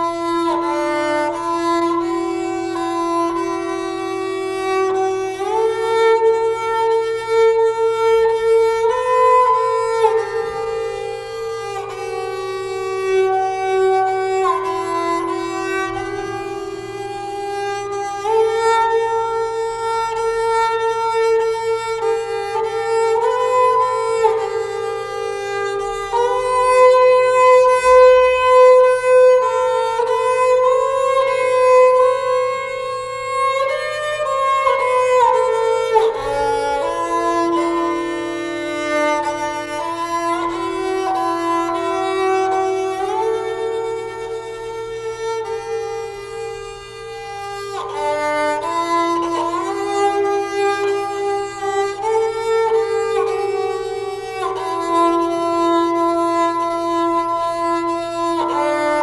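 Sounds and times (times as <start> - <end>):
slow bowed string melody: 0.0 - 59.0.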